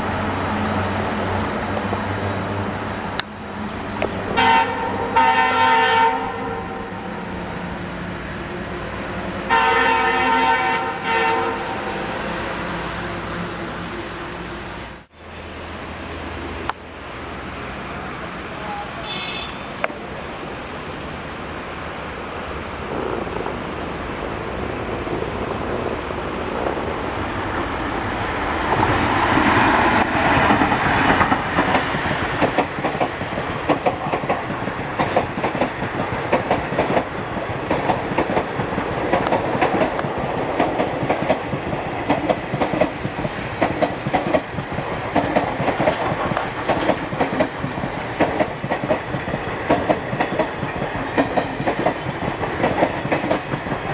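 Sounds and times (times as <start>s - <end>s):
train running past: 0.0s - 53.9s
wheels clacking over rail joints: 26.6s - 53.9s.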